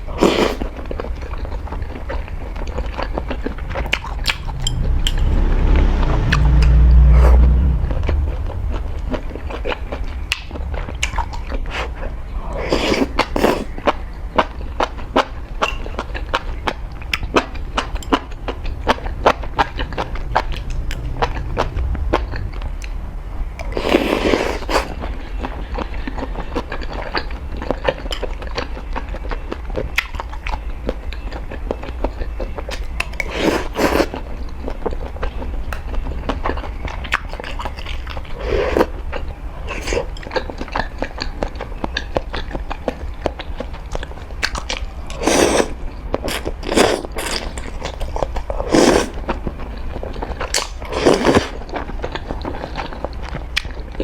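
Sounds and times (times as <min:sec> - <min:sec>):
wet chewing: 0:00.0 - 0:04.9, 0:08.6 - 0:23.0, 0:23.6 - 0:54.0
slurping noodles: 0:00.1 - 0:00.7, 0:12.6 - 0:13.8, 0:23.7 - 0:25.0, 0:33.2 - 0:34.2, 0:38.4 - 0:38.9, 0:39.7 - 0:40.1, 0:45.1 - 0:49.2, 0:50.6 - 0:51.6.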